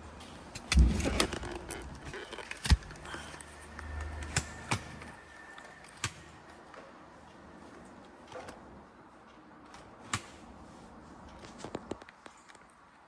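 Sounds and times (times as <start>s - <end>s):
sharp clicks and knocks: 0.5s - 5.1s.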